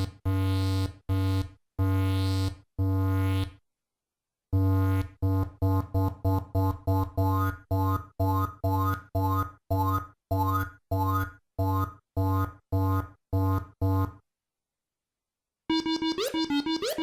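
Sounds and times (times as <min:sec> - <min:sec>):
synthesizer playing low notes: 0:15.7 - 0:17.0.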